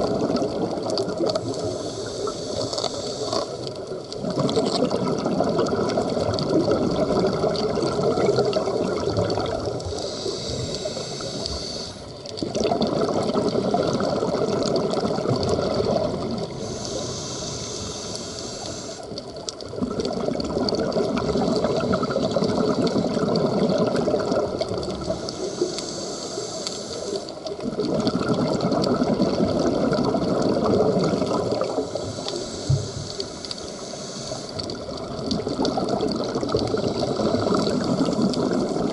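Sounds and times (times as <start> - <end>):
exhaled bubbles: 0.0 - 38.9
regulator hiss on inhale: 1.2 - 4.0, 8.2 - 12.4, 16.4 - 19.6, 25.0 - 27.6, 31.1 - 35.1, 36.7 - 38.9.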